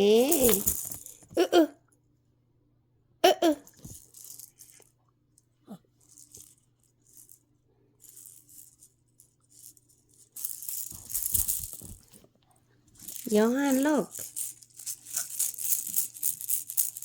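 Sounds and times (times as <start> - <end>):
toy shaker rattling: 0.0 - 1.5, 3.6 - 4.9, 6.0 - 12.2, 12.9 - 17.0.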